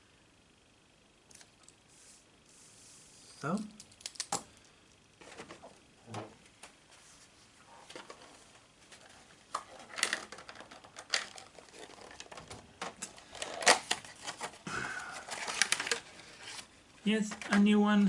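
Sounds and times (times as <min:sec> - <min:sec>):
plastic packaging crinkling: 0:09.0 - 0:16.7.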